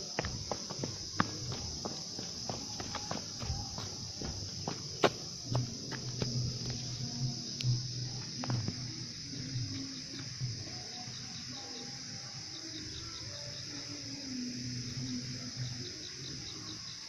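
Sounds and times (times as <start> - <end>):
cricket chirping: 0.0 - 17.0
insects droning: 0.0 - 17.0.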